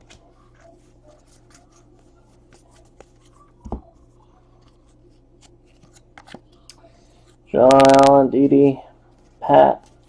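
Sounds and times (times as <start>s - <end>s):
cards rustling and clicking: 4.6s - 6.8s, 7.6s - 8.2s.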